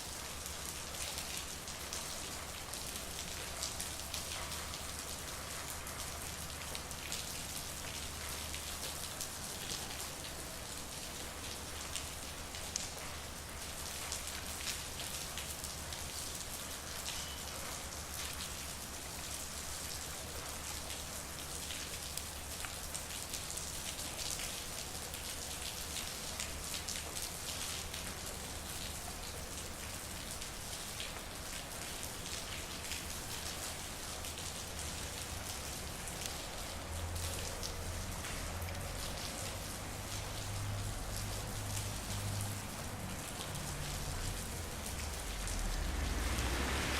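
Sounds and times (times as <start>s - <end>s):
rain drops ticking on hard surfaces: 0.0s - 46.9s.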